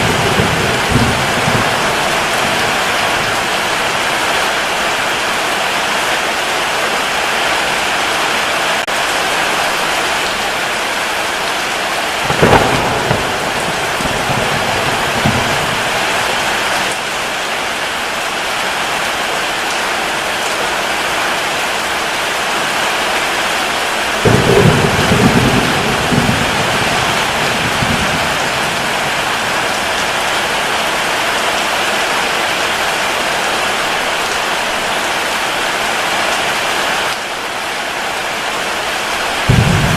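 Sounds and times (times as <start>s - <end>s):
thunder cracking and rumbling: 0.0s - 4.9s, 12.1s - 17.1s, 24.1s - 31.1s, 39.4s - 39.9s
heavy rain: 0.0s - 39.9s.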